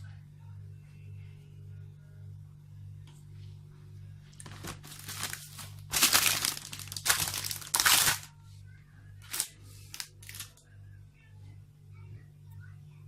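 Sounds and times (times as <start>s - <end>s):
plastic packaging crinkling: 4.4s - 8.3s, 9.2s - 10.6s.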